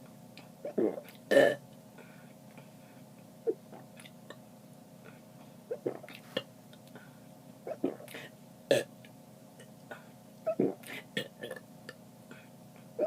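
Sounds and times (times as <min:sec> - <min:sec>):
person burping: 0:00.7 - 0:01.6, 0:10.5 - 0:11.6.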